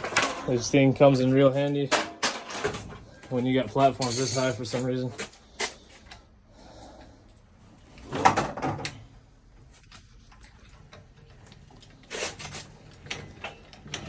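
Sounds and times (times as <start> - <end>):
water heater clunking and rattling: 0.0 - 5.3, 8.1 - 9.0.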